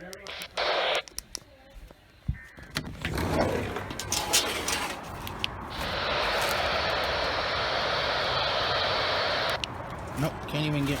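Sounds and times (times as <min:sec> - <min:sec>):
radio static hiss: 0:00.0 - 0:01.2, 0:05.7 - 0:09.8
clicks and handling noises: 0:02.6 - 0:06.6.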